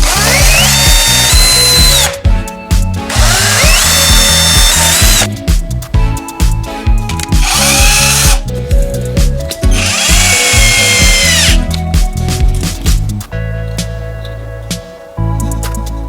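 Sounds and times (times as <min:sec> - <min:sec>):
electric drill spinning: 0:00.0 - 0:02.2, 0:03.0 - 0:05.4, 0:07.2 - 0:08.4, 0:09.6 - 0:11.8
background music with steady beat: 0:00.0 - 0:16.0.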